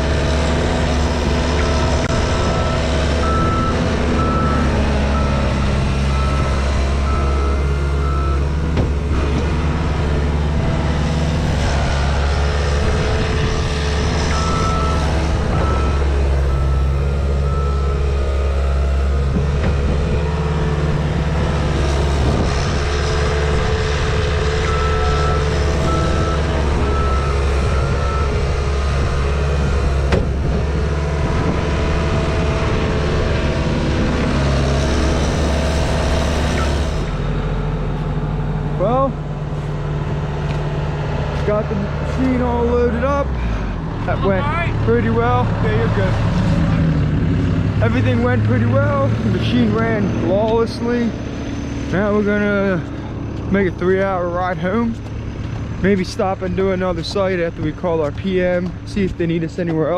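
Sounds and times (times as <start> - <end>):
diesel engine running: 0.0 - 59.9
backup alarm beeping: 2.5 - 8.6.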